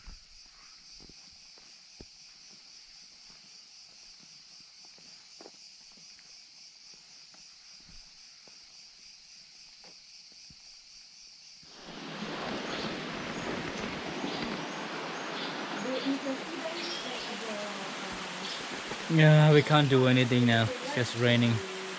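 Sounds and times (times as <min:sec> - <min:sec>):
high-pitched insect chorus: 0:00.0 - 0:21.9
rain hiss: 0:11.6 - 0:21.9.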